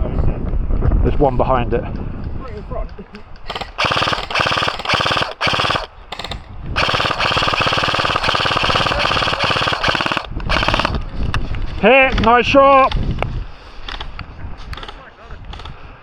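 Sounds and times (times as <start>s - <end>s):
airsoft gun firing full auto: 3.5s - 11.0s.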